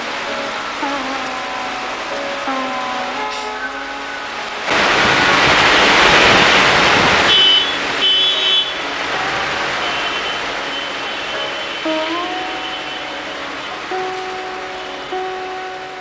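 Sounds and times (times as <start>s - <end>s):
soft background music: 0.0s - 4.7s, 10.2s - 16.0s
loud rushing noise: 3.1s - 13.9s.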